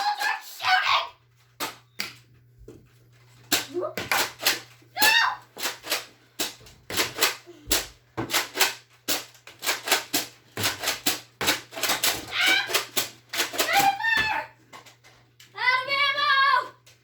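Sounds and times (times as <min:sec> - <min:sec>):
toy blasters clicking: 0:03.5 - 0:14.1.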